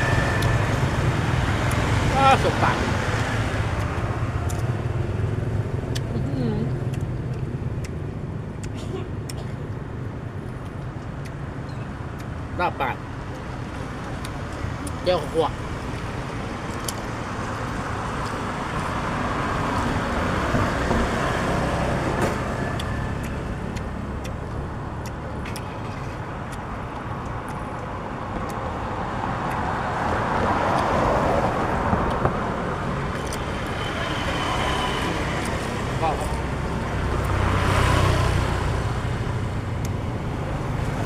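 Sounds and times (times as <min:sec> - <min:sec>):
road traffic rumble: 0:00.0 - 0:41.0.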